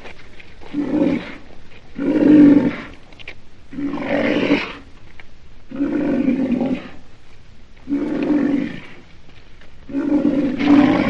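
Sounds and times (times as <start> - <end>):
rhinoceros calling: 9.8 - 11.0.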